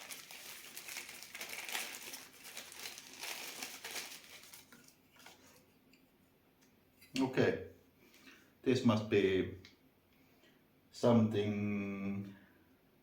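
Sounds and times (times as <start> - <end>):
packaging crinkling: 0.0 - 5.6.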